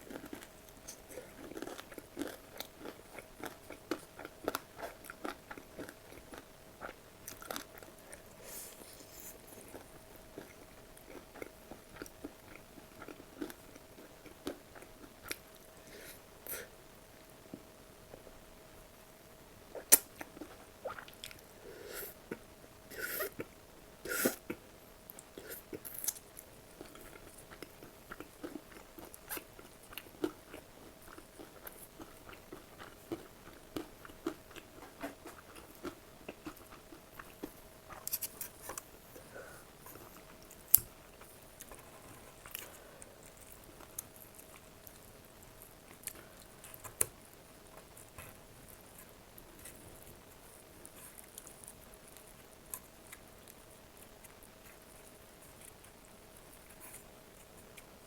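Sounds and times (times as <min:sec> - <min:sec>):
person chewing crunchy food: 0:00.0 - 0:15.5, 0:24.3 - 0:38.9
faint steady hum: 0:00.0 - 0:58.0.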